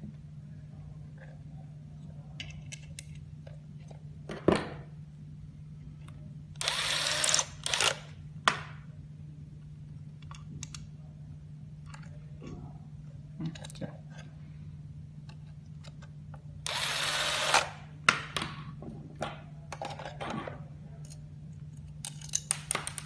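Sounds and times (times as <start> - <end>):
steady low hum: 0.0 - 23.0
electric screwdriver whirring: 6.6 - 8.0, 16.6 - 17.8.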